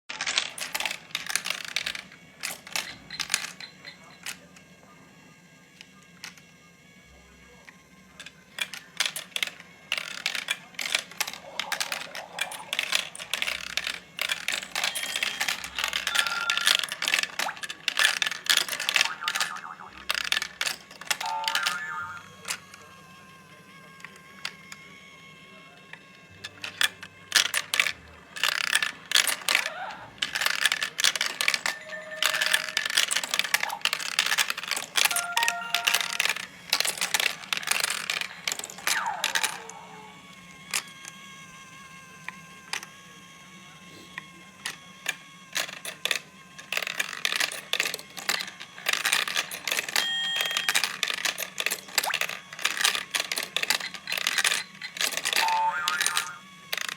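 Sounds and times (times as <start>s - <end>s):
marbles clattering down plastic track: 0.1s - 4.5s, 8.2s - 22.9s, 26.4s - 39.7s, 44.6s - 56.9s.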